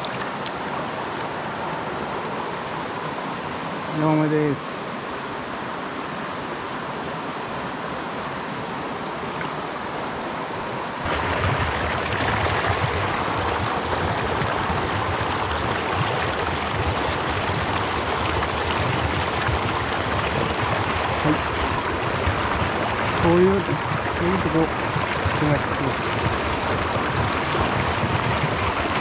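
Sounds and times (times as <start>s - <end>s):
stream water rushing over riffle: 0.0s - 29.0s.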